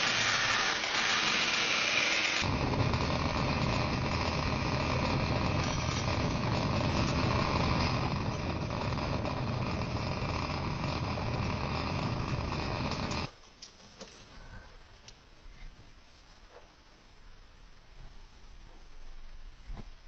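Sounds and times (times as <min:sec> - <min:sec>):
power tool grinding: 0:00.0 - 0:13.3.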